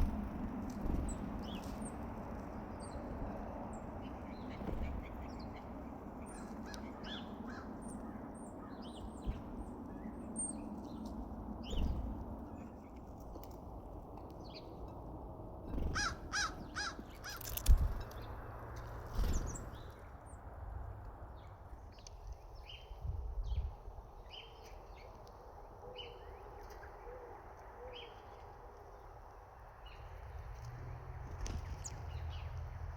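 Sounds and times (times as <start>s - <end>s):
birds chirping: 0.0s - 13.5s, 14.3s - 20.4s
harsh caw-like bird calls: 6.3s - 9.0s, 15.9s - 17.6s.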